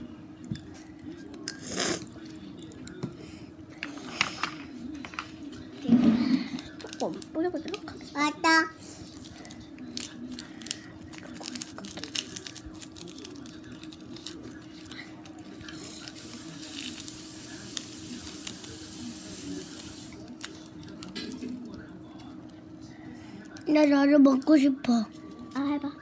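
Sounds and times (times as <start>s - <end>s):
seasoning sprinkled onto paper: 9.3s - 21.1s.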